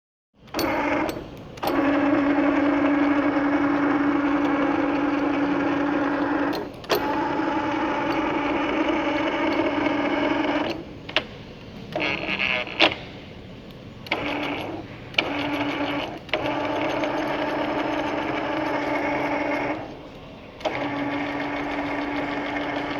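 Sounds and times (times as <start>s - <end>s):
mechanical clatter: 0.4s - 22.9s
sharp clicks: 0.5s - 13.1s
metal lathe humming: 0.5s - 22.9s.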